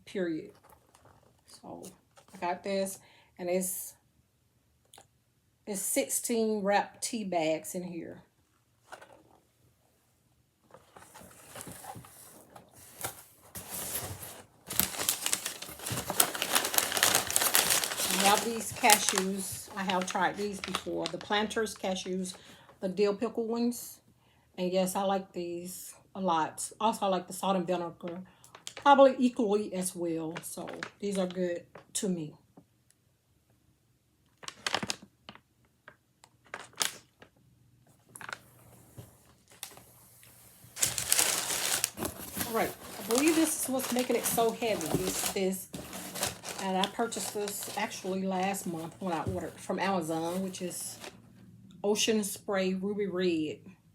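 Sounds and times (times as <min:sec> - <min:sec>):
packaging rustling: 0:10.7 - 0:21.5, 0:34.4 - 0:35.4, 0:36.4 - 0:37.3, 0:38.1 - 0:51.2
plastic crinkling: 0:10.8 - 0:22.1, 0:34.4 - 0:35.4, 0:36.4 - 0:37.3, 0:39.4 - 0:39.9, 0:40.6 - 0:51.2
packaging clicks and knocks: 0:14.7 - 0:19.2, 0:40.8 - 0:48.1.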